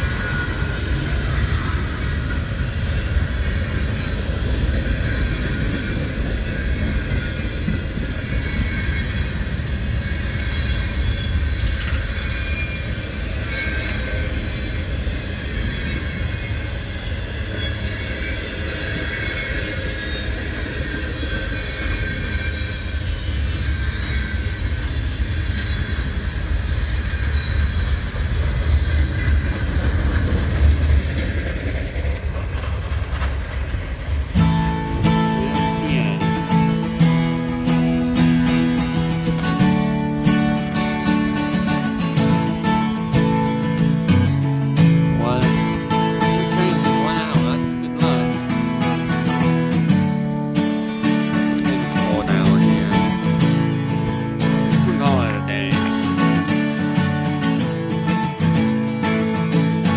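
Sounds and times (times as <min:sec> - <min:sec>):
train rumbling past: 0:00.0 - 0:59.9
wheel squeals: 0:00.0 - 0:59.9.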